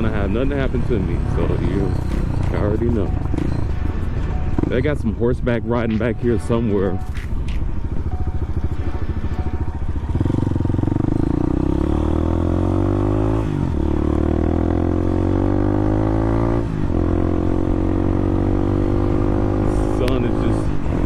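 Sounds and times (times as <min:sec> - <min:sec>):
dirt bike engine accelerating: 0:07.3 - 0:21.0.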